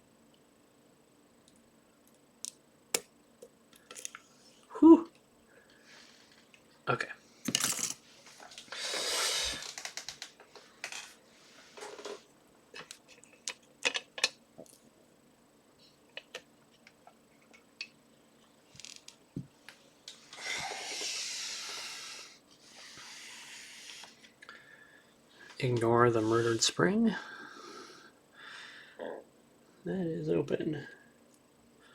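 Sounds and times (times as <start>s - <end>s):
breathy exhale: 20.4s - 25.1s, 27.2s - 29.1s.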